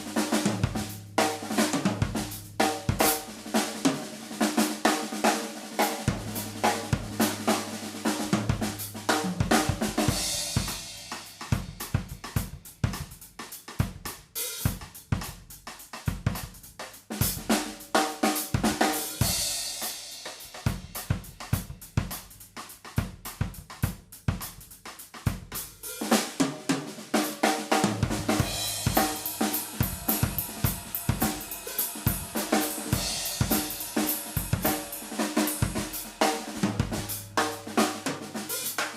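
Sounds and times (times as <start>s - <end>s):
drum kit playing: 0.0s - 38.9s
deep ringing low drum: 1.9s - 3.0s, 6.1s - 7.5s, 28.0s - 34.8s
cymbal crashes: 6.0s - 11.9s, 28.1s - 37.8s.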